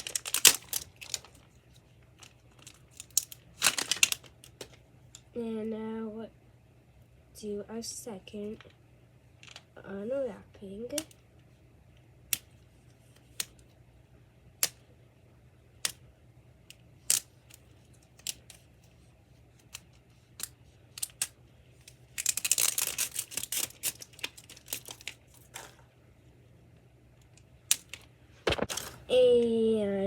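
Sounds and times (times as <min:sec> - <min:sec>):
plastic wrapping crinkling and tearing: 0:00.0 - 0:01.5, 0:02.2 - 0:04.8, 0:22.2 - 0:25.7, 0:27.8 - 0:29.1.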